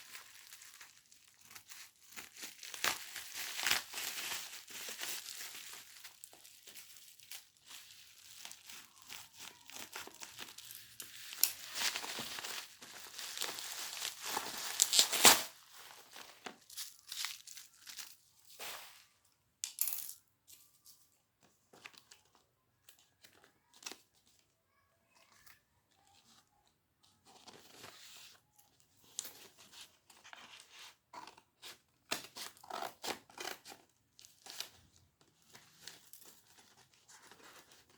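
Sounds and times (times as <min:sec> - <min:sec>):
packaging crinkling and tearing: 0:00.0 - 0:18.8.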